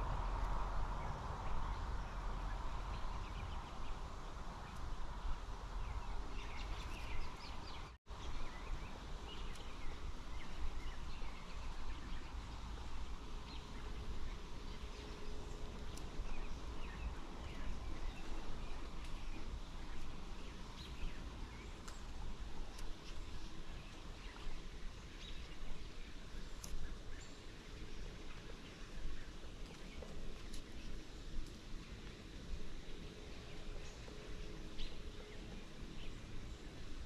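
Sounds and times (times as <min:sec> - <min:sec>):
steady outdoor hiss: 0:00.0 - 0:37.0
bird chirps: 0:04.6 - 0:28.8.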